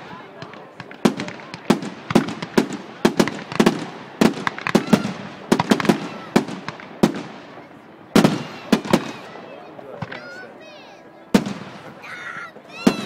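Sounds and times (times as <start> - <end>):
aerial fireworks bangs: 0.0 - 7.6, 8.2 - 9.4, 11.3 - 11.9.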